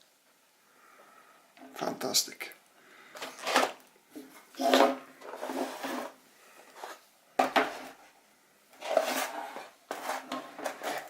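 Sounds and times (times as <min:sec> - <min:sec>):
knocks and rubbing scrapes: 0:03.4 - 0:08.0, 0:08.8 - 0:11.0.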